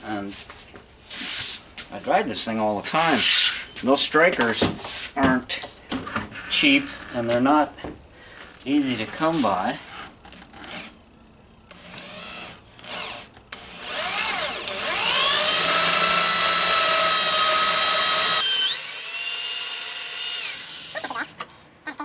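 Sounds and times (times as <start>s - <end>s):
electric drill whining: 11.7s - 21.4s.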